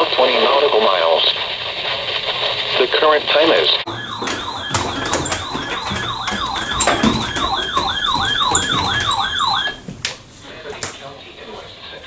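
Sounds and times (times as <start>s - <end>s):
electronic siren yelping: 3.9s - 9.8s.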